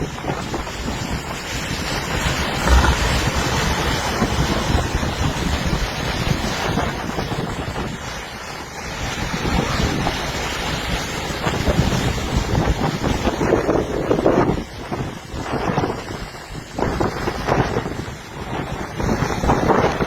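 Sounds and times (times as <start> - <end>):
waves crashing on shore: 0.0 - 20.0
wind buffeting microphone: 0.0 - 20.0.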